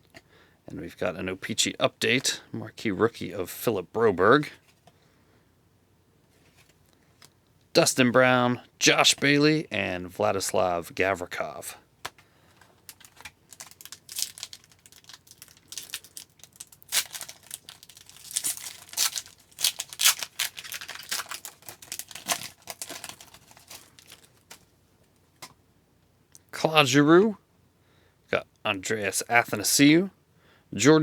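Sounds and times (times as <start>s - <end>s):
foil wrapper tearing and crinkling: 12.8s - 24.6s.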